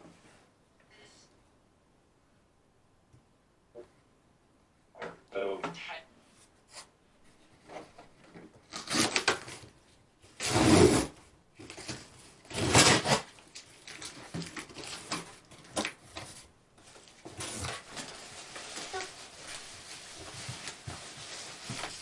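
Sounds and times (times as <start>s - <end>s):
packaging rustling and scraping: 7.6s - 9.7s, 10.3s - 22.0s.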